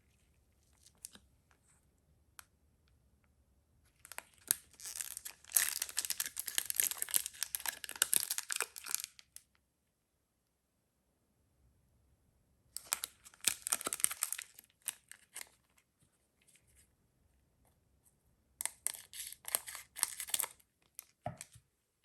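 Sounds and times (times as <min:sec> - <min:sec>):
foil wrapper crinkling and tearing: 0:04.0 - 0:09.3, 0:12.8 - 0:15.6, 0:18.6 - 0:21.5.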